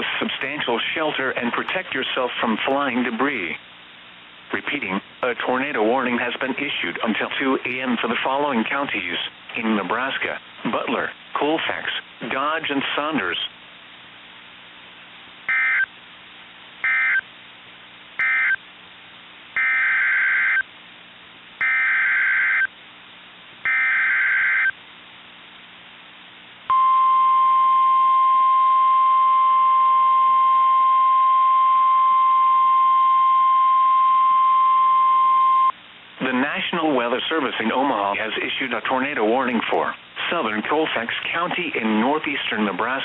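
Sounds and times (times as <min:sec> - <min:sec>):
steady warning alarm tone: 0:15.5 - 0:15.9, 0:16.8 - 0:17.2, 0:18.2 - 0:18.6, 0:19.6 - 0:20.6, 0:21.6 - 0:22.7, 0:23.7 - 0:24.8.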